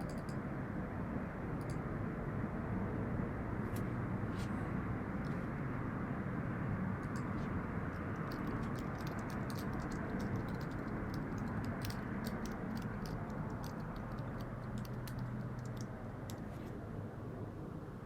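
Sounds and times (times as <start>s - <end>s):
light irregular clicks: 0.0s - 0.4s, 1.6s - 1.8s, 7.0s - 16.8s
low rumble and hum: 0.0s - 18.0s.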